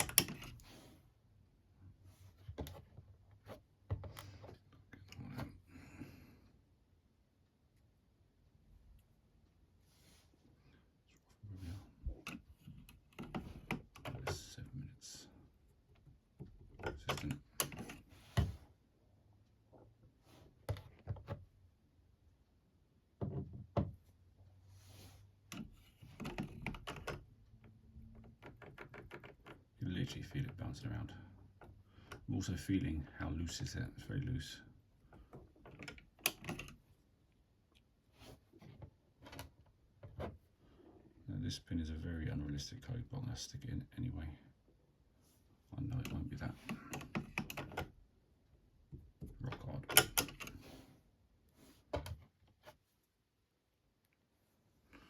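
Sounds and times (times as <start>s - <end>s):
metal clicks and knocks in lock: 0.0s - 0.6s, 49.5s - 50.5s.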